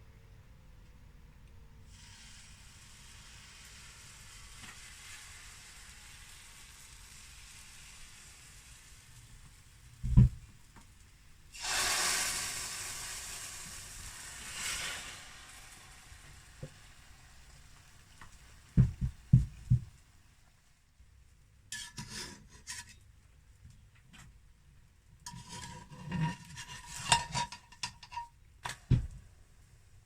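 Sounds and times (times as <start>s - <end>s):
faint hiss: 0.0s - 25.1s
batter sizzling in a pan: 1.9s - 20.1s, 25.2s - 28.2s.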